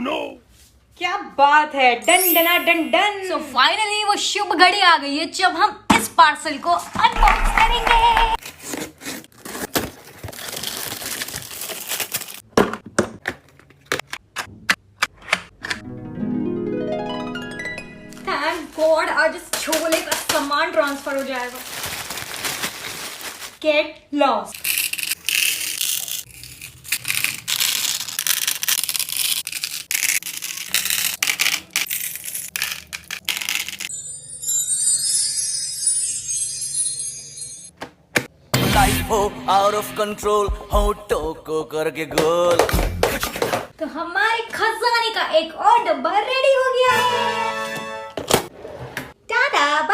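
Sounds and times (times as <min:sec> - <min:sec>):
plastic packaging tearing: 0:08.4 - 0:12.5, 0:20.0 - 0:23.6, 0:24.5 - 0:33.9
packaging clicks and crackles: 0:09.3 - 0:12.4.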